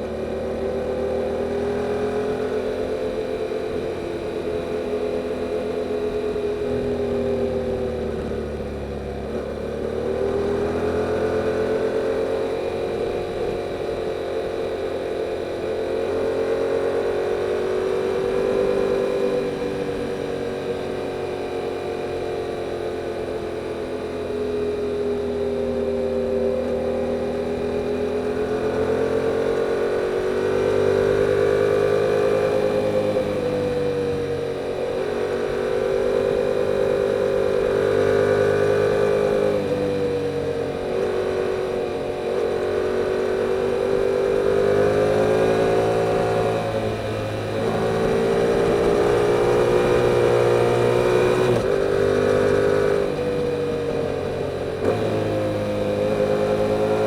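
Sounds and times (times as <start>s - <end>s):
motorcycle engine at part throttle: 0.0s - 57.0s.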